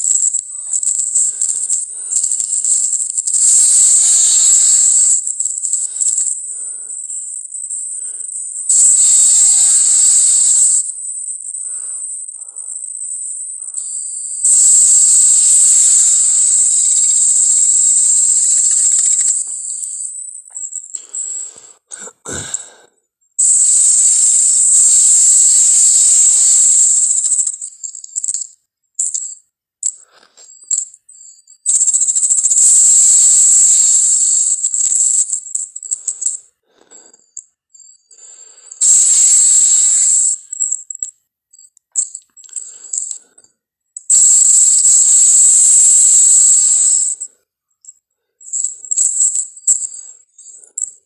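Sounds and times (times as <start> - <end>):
creature hissing rattles: 0.0 - 7.2, 7.8 - 12.8, 13.6 - 20.1, 20.8 - 22.6, 23.4 - 27.6, 31.7 - 37.3, 38.1 - 40.8, 44.1 - 47.3
creature long loud hiss: 3.3 - 5.2, 8.7 - 10.9, 14.4 - 19.3, 23.6 - 27.1, 32.6 - 34.5, 38.8 - 40.4
creature breathy snorts: 21.9 - 22.8.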